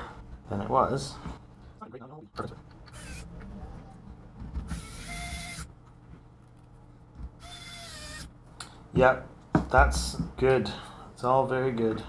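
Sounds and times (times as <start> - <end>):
electric motor tool whining: 2.9 - 3.3, 4.7 - 5.7, 7.4 - 8.3.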